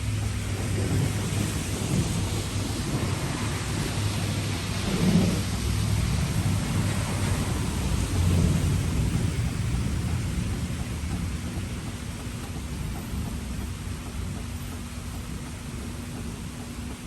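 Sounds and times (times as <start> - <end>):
low rolling thunder: 0.0 - 12.1
steady rain hiss: 0.0 - 17.0.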